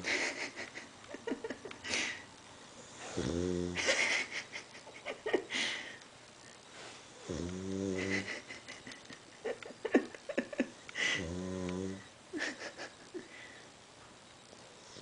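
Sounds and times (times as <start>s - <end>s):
dog snoring: 2.8s - 3.9s, 7.1s - 8.4s, 11.1s - 12.1s.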